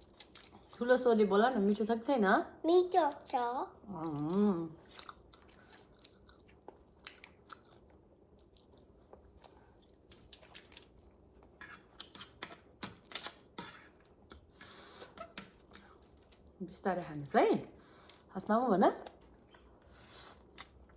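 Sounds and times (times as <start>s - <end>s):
person chewing noodles: 0.0s - 0.8s, 3.9s - 16.6s.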